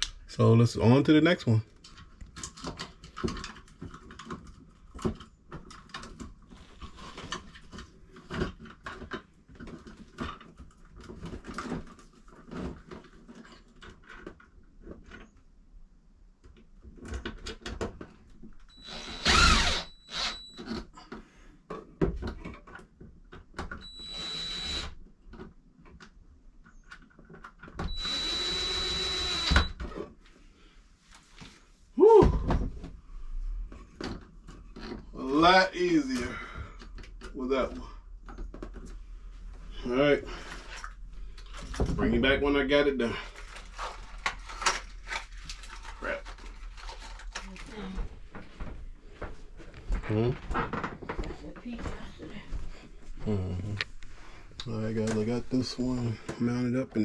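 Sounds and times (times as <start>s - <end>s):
power drill running: 18.7s - 20.7s, 23.8s - 25.0s, 27.9s - 29.8s.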